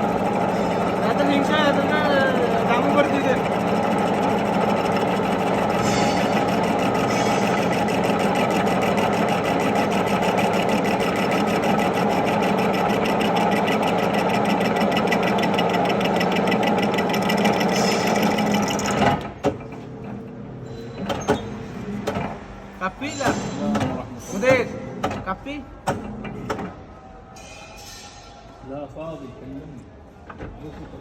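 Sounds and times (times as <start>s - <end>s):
lathe humming with fast ticking: 0.0s - 19.4s.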